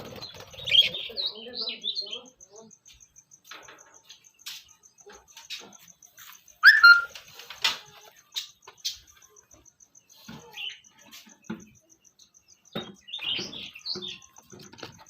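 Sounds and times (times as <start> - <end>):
caged birds chirping: 0.0 - 15.0
small knocks and rustles: 2.9 - 11.9, 12.7 - 15.0.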